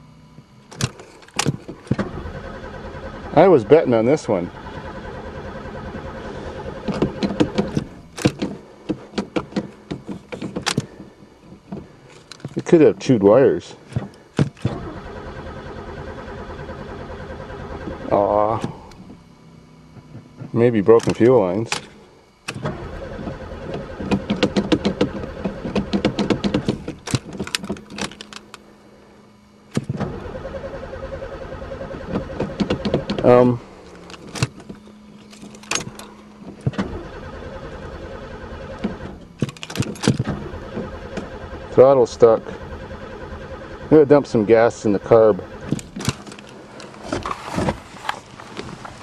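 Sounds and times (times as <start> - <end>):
steady hum: 0.0 - 49.0
starter cranking engine: 0.8 - 12.9, 13.9 - 19.1, 21.0 - 28.6, 29.7 - 49.0
sharp clicks and knocks: 6.8 - 12.7, 23.7 - 28.6, 32.1 - 33.3, 38.8 - 41.3.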